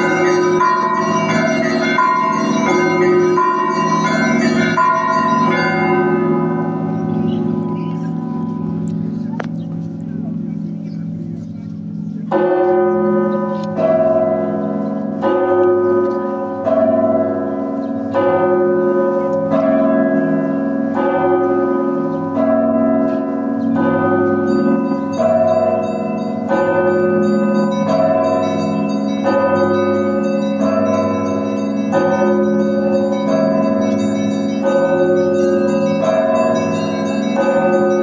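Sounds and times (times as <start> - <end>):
small high-pitched bells: 0.0 - 8.8, 19.4 - 38.0
church bells ringing: 0.0 - 38.0.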